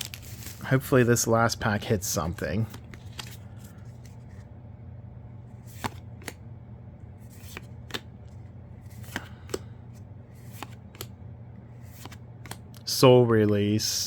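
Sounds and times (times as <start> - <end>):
steady low hum: 0.0 - 14.0
cards being flicked through: 5.6 - 6.4, 7.2 - 11.2, 11.8 - 12.8.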